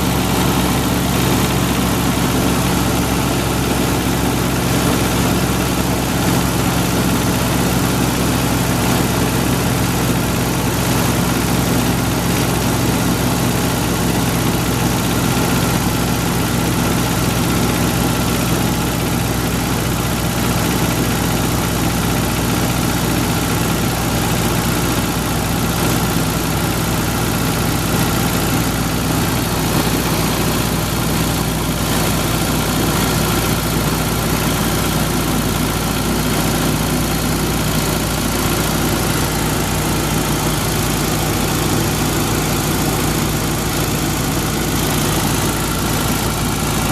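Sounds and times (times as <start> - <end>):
car engine idling: 0.0 - 46.9.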